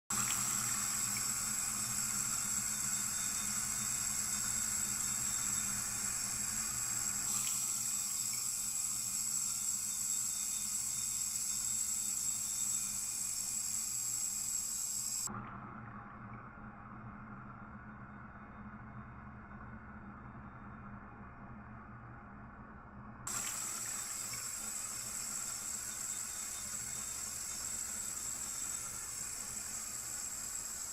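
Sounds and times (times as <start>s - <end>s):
water running from sink tap: 0.1s - 15.3s, 23.3s - 30.9s.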